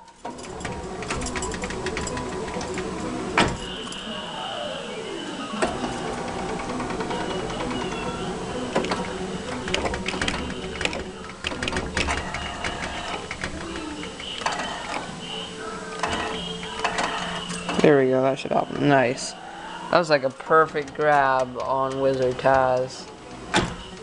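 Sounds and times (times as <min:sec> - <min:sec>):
claw machine motors whirring: 0:00.0 - 0:24.0
claw clicking and clunking: 0:00.2 - 0:03.7, 0:05.6 - 0:17.9.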